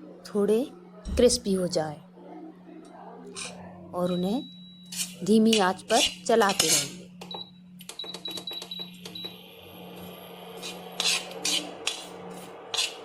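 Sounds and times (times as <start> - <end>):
steady low hum: 0.0 - 7.9
nuts scraping in a pan: 5.8 - 6.9, 10.6 - 13.0.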